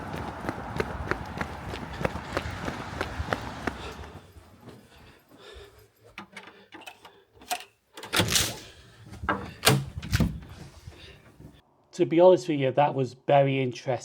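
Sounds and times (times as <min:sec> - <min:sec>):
door opening and closing: 0:06.2 - 0:10.7.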